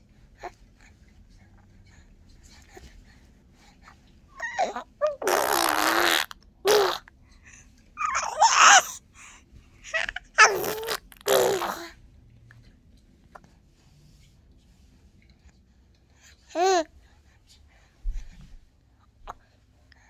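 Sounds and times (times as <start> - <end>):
baby making raspy vocal sounds: 4.4 - 7.0, 8.0 - 9.0, 10.0 - 11.9.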